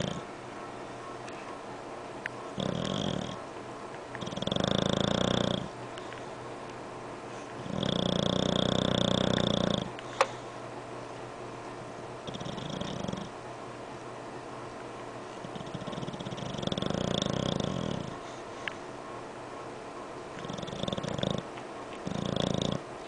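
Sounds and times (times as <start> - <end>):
dog snoring: 0.0 - 0.3, 2.6 - 3.4, 4.2 - 5.8, 7.6 - 10.0, 12.2 - 13.4, 15.4 - 18.4, 20.4 - 22.9.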